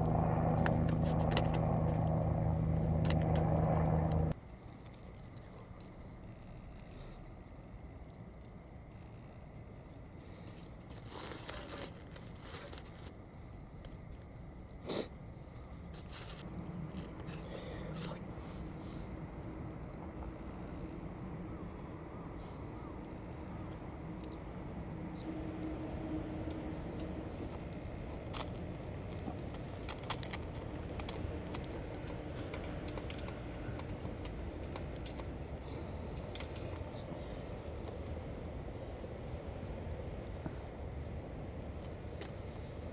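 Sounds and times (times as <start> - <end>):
steady low rumble: 0.0 - 11.0, 13.1 - 42.9
rustling and crinkling: 10.3 - 14.3, 15.6 - 19.0, 27.3 - 37.4.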